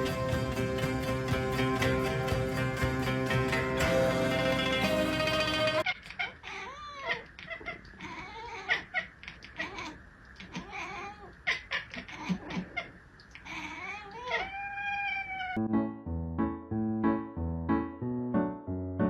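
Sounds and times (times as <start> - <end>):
cat meowing: 6.2 - 15.6.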